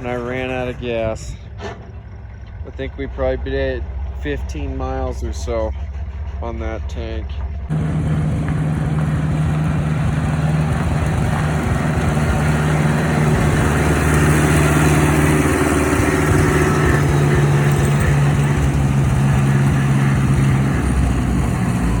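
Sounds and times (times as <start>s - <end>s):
engine running steadily: 0.0s - 22.0s.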